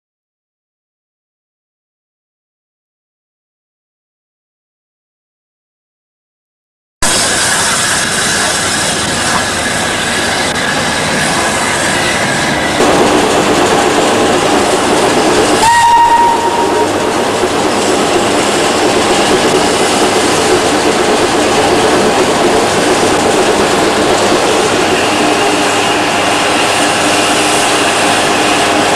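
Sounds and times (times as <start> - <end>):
train rumbling: 7.0 - 28.9
train whistle blast: 15.6 - 17.0, 24.8 - 28.9.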